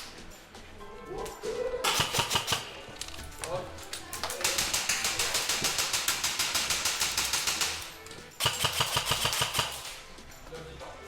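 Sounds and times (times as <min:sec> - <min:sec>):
airsoft gun firing full auto: 0:01.8 - 0:03.0, 0:04.4 - 0:10.0.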